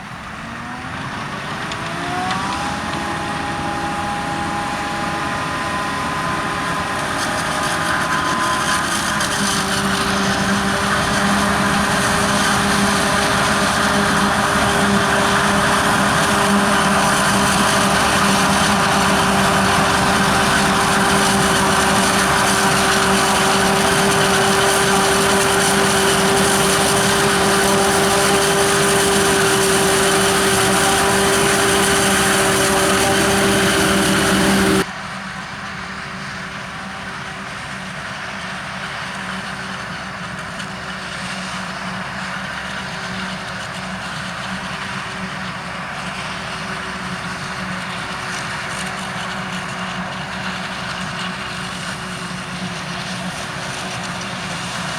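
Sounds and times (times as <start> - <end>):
farm machinery engine running: 0.0 - 54.9
steady machine whine: 1.6 - 34.9.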